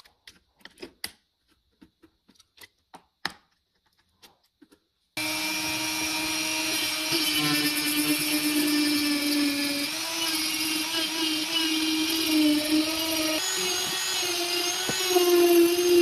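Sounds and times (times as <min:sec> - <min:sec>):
power tool whining: 0:05.2 - 0:16.0.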